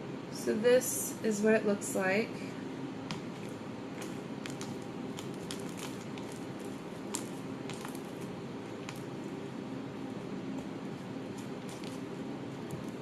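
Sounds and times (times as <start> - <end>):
low room hum: 0.0 - 13.0
slime squishing and clicking: 3.1 - 9.1.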